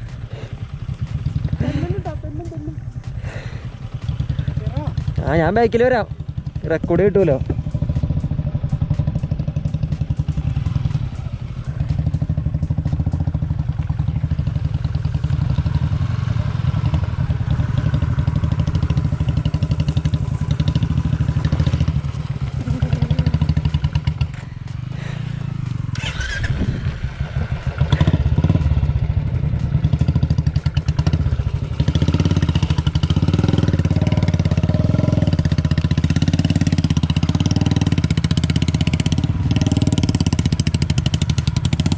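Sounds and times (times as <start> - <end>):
motorcycle engine revving: 0.0 - 41.9.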